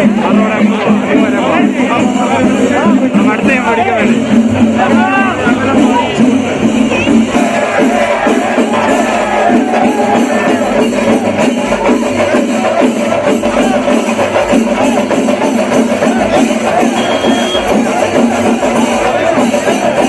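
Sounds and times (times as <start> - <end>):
loud music with busy percussion: 0.0 - 20.0.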